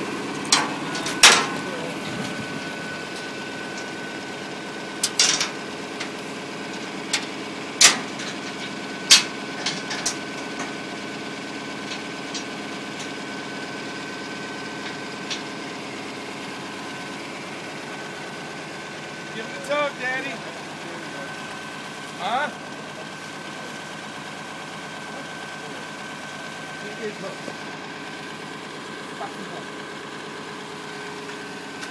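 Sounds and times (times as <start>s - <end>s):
engine idling with thin whine: 0.0s - 31.9s.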